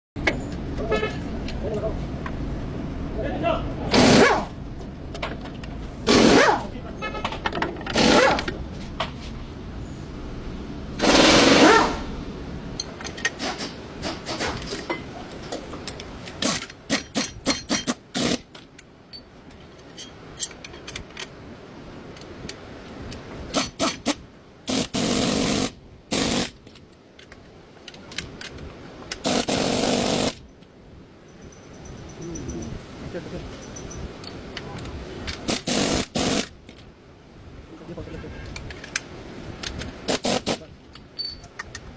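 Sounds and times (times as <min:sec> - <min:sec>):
rattling power tool bursts: 0:03.9 - 0:04.6, 0:06.1 - 0:06.6, 0:07.9 - 0:08.5, 0:11.0 - 0:12.1, 0:13.1 - 0:14.9, 0:16.3 - 0:18.6, 0:23.5 - 0:26.6, 0:29.2 - 0:30.4, 0:35.4 - 0:36.6, 0:40.0 - 0:40.7
metallic clicks and knocks: 0:12.8 - 0:21.4, 0:40.8 - 0:41.9.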